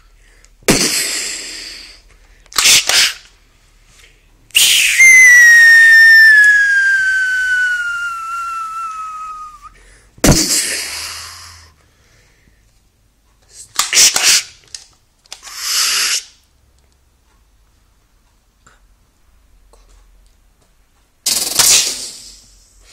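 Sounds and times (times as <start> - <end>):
gunshot crack with hiss: 0.7 - 1.4
falling whistle-like tone: 4.6 - 9.8.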